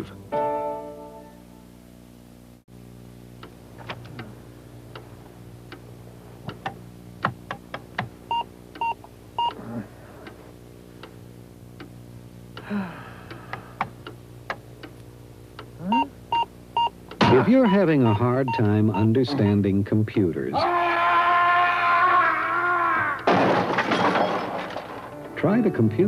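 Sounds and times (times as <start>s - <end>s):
steady electrical hum: 0.0s - 26.0s
short beeps: 17.6s - 19.6s.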